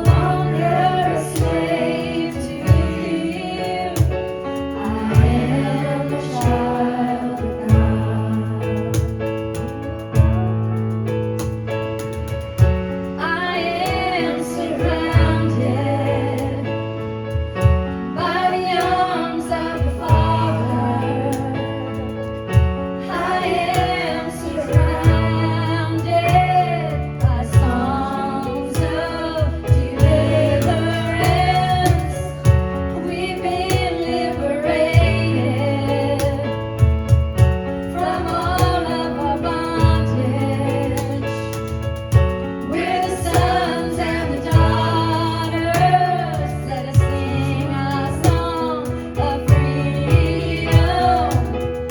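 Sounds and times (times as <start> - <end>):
band playing worship music: 0.0 - 51.9
drum hits: 28.8 - 33.0.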